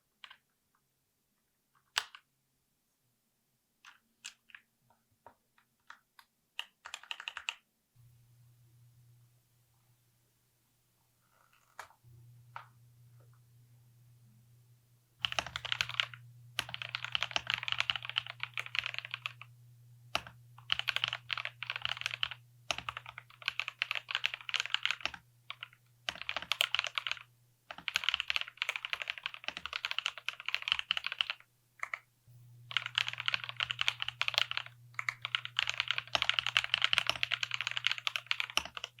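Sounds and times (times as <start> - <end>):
mechanical keyboard typing: 0.1 - 0.5, 1.8 - 2.3, 3.8 - 4.7, 5.3 - 7.7, 15.2 - 19.5, 20.1 - 32.1, 32.7 - 39.0.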